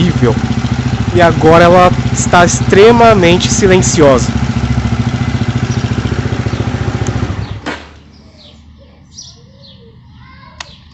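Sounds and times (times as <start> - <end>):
motorcycle engine idling: 0.0 - 10.0
faint bird chirps: 7.4 - 10.9.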